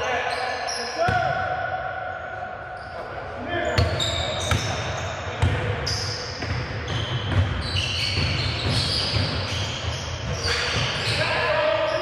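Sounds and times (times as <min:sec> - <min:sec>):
sneakers squeaking: 0:00.0 - 0:01.5, 0:02.1 - 0:12.0
basketball bouncing on court: 0:03.8 - 0:11.2.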